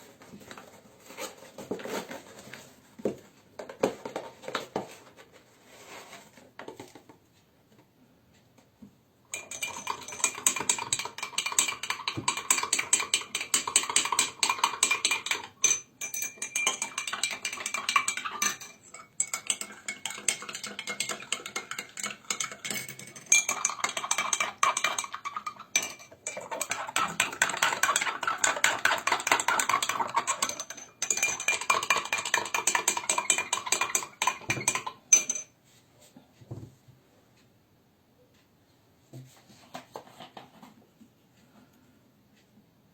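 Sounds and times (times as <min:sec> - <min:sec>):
spoon stirring in a glass: 0:09.3 - 0:35.5.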